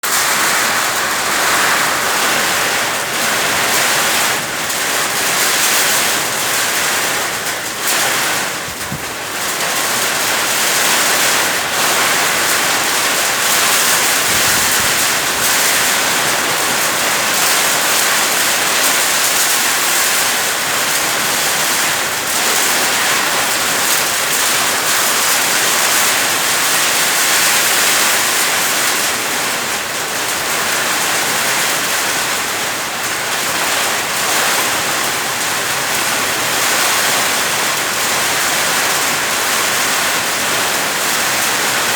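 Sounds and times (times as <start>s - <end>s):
heavy rain pouring: 0.0s - 41.9s
gusting wind: 13.4s - 16.3s.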